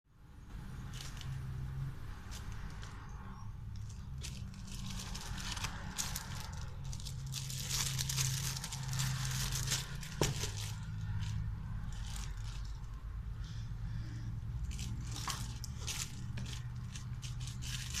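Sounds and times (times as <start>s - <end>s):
plastic packaging crinkling: 3.7s - 13.0s, 14.6s - 18.0s.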